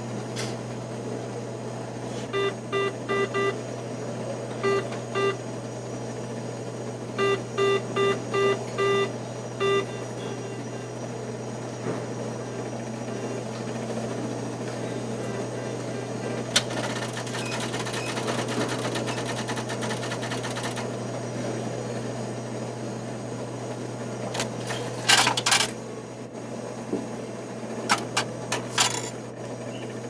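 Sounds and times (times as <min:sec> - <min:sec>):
low machine hum: 0:00.0 - 0:30.0
mechanical bursts and clicks: 0:16.4 - 0:21.0, 0:24.2 - 0:25.8, 0:27.9 - 0:29.8
mechanical clatter: 0:16.5 - 0:20.9, 0:24.3 - 0:25.8, 0:27.9 - 0:29.2.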